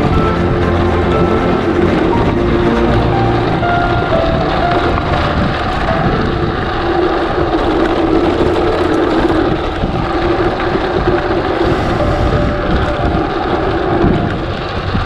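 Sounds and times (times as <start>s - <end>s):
wind buffeting microphone: 0.0s - 15.0s
steady hum: 11.4s - 14.7s.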